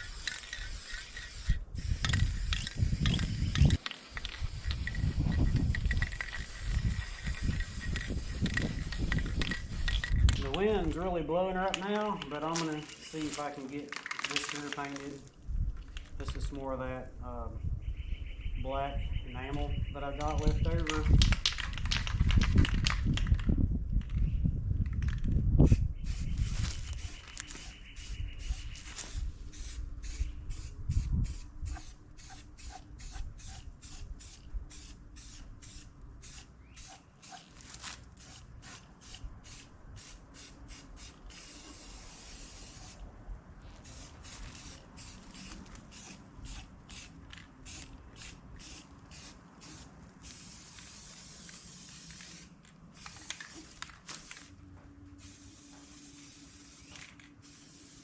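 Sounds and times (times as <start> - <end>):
spray paint hissing: 0.0 - 10.6, 25.6 - 43.1, 43.7 - 58.0
wind rumble on microphone: 0.7 - 11.3, 15.4 - 34.9.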